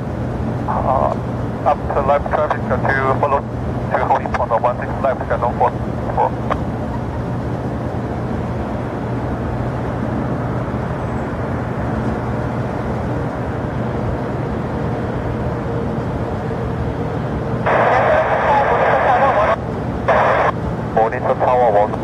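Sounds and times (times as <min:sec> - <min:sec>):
jet engines rumbling: 0:00.0 - 0:22.0
low steady hum: 0:00.0 - 0:22.0
radio hiss: 0:01.7 - 0:03.3, 0:03.9 - 0:06.4, 0:17.7 - 0:22.0.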